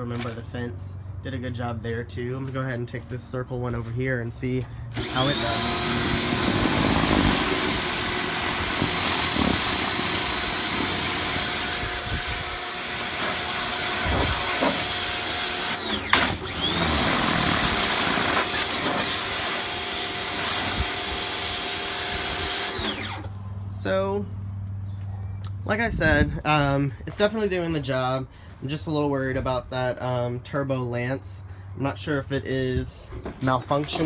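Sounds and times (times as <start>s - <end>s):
pressure washer motor whine: 4.9s - 25.1s
water jet hissing: 5.0s - 24.7s.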